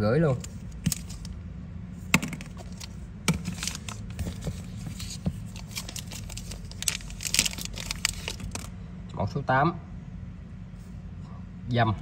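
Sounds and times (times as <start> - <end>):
steady low hum: 0.0 - 12.0
rustling: 2.5 - 8.7.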